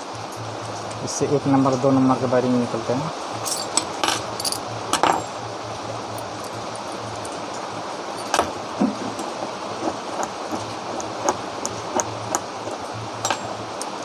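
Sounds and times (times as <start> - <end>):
steady low hum: 0.0 - 14.0
light metallic clinks: 3.4 - 5.4, 8.2 - 9.4.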